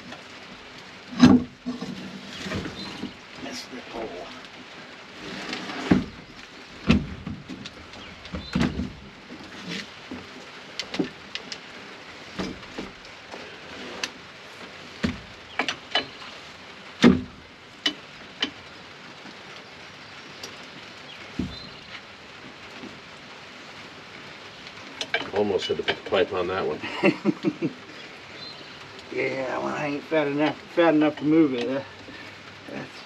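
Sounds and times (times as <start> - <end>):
rain hissing: 0.0 - 33.0
hand tools clanking on metal: 25.0 - 26.5.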